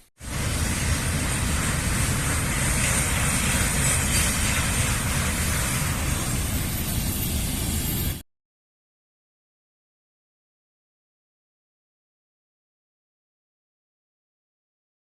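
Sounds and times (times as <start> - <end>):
heavy wind noise: 0.2 - 8.2.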